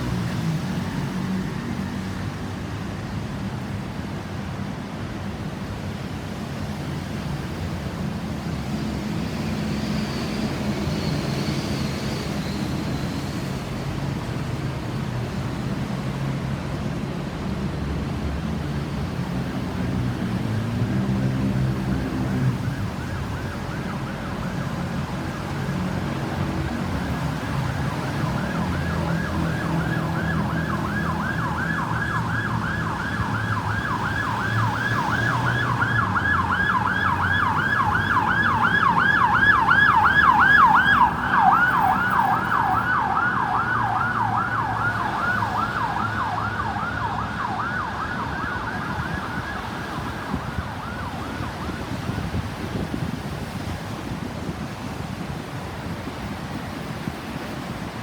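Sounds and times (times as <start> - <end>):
road traffic engines: 0.0 - 58.0
ambulance siren warbling: 20.9 - 53.1.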